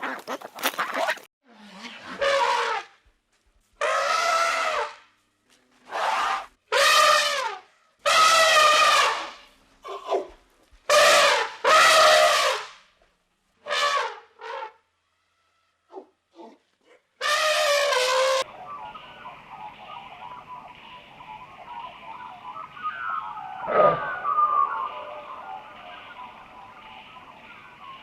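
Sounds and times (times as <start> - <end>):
animal's loud brassy calls: 3.8 - 5.0, 5.9 - 9.4, 10.9 - 12.7, 17.2 - 19.0, 21.7 - 27.9.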